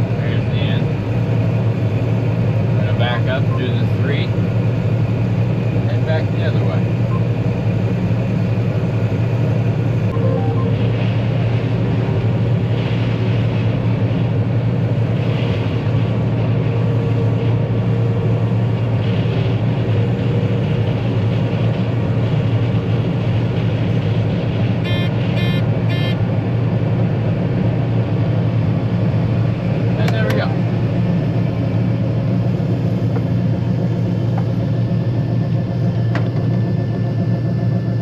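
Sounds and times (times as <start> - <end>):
combine harvester droning: 0.0 - 38.0
short beeps: 10.1 - 10.9, 24.9 - 26.2.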